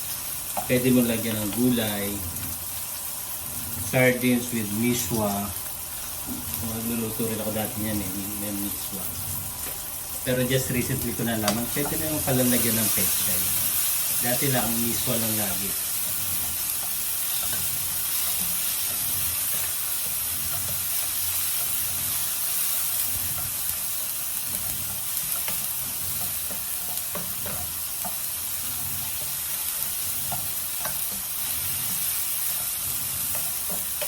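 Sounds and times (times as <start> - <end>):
vegetables sizzling in hot oil: 0.0 - 34.0.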